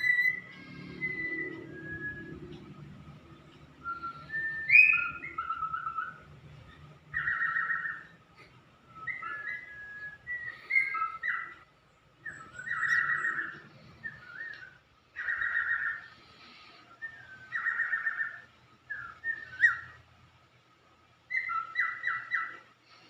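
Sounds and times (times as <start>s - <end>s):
cockatiel whistling a tune: 0.0s - 6.4s, 7.1s - 8.2s, 8.8s - 11.6s, 12.2s - 16.1s, 17.0s - 20.0s, 21.3s - 22.6s.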